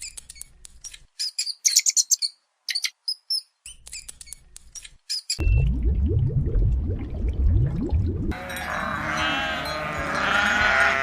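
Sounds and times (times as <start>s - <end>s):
small bird chirping: 0.0s - 5.4s
sheep bleating: 8.3s - 11.0s.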